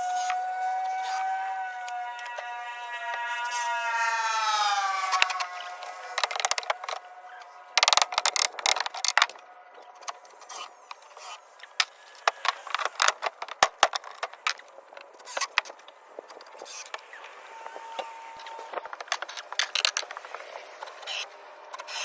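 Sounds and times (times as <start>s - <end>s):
wood and hardware clattering: 6.2s - 9.4s, 11.8s - 16.6s.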